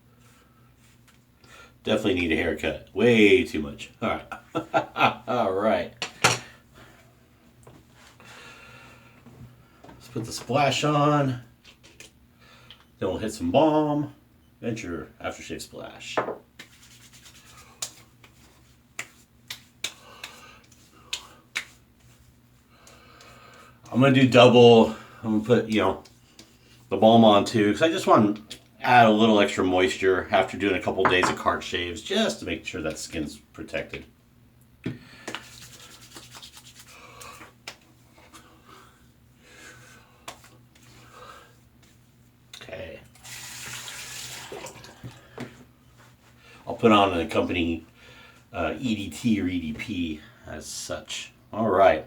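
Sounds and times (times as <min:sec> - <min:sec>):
faint rubbing of skin: 0:16.6 - 0:23.3, 0:35.3 - 0:38.5, 0:40.3 - 0:42.4
palms slapping skin: 0:16.6 - 0:23.3, 0:35.2 - 0:37.9, 0:40.2 - 0:41.0.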